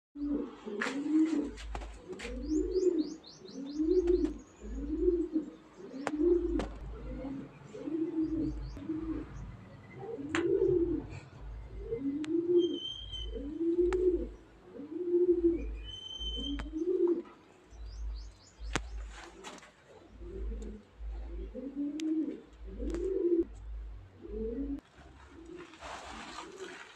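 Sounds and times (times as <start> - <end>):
bird cooing: 0.2 - 17.4, 19.1 - 23.5, 24.2 - 25.8
high bird chirps: 11.4 - 13.5, 15.6 - 16.9.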